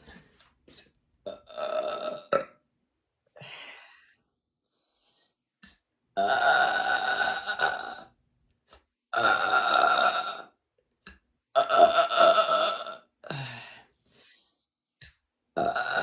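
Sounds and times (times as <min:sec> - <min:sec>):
woman burping: 0:01.3 - 0:02.6, 0:15.6 - 0:16.0.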